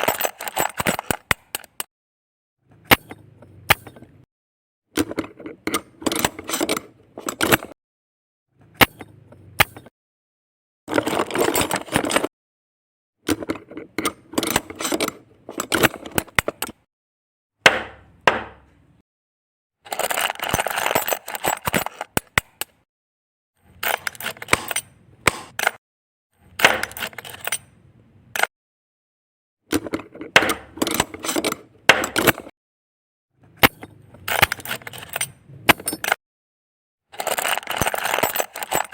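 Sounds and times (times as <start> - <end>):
plastic bricks clicking and clattering: 0.0 - 1.9, 19.9 - 22.8, 29.7 - 32.5, 37.2 - 38.9.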